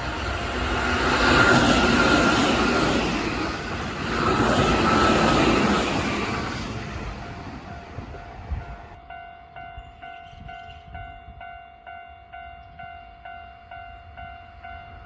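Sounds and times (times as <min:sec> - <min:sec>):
train wheels rushing on rail: 0:00.0 - 0:09.1.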